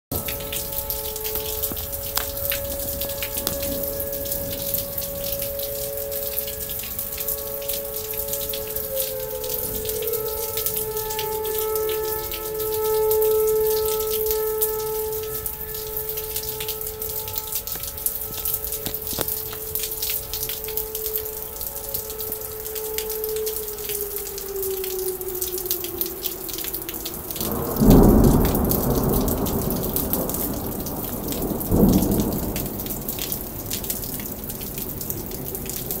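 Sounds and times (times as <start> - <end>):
thunder rolling: 0.1 - 7.8, 26.5 - 36.0
rain falling: 0.1 - 36.0
warning sirens wailing: 0.1 - 36.0.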